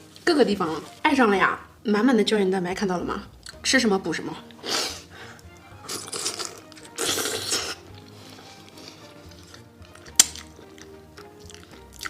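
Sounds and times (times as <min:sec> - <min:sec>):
faint background music: 0:00.0 - 0:12.0
wet eating mouth sounds: 0:05.4 - 0:12.0.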